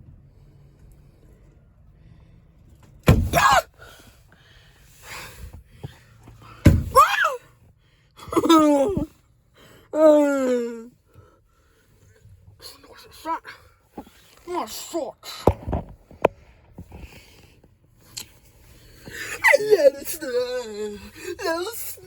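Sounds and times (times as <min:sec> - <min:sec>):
people shouting and shrieking: 0:03.2 - 0:03.7, 0:06.8 - 0:07.4.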